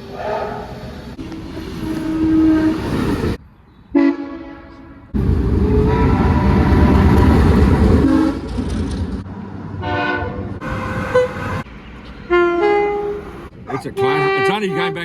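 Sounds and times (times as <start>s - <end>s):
train rumbling past: 0.0s - 15.0s
locomotive air horn: 1.2s - 7.0s, 7.8s - 8.6s, 9.8s - 15.0s.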